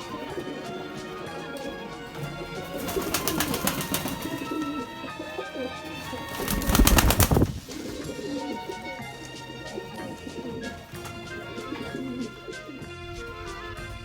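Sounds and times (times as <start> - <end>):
rapid clattering flurry: 0.0 - 4.8, 6.0 - 12.2
pigeons cooing: 0.0 - 14.0.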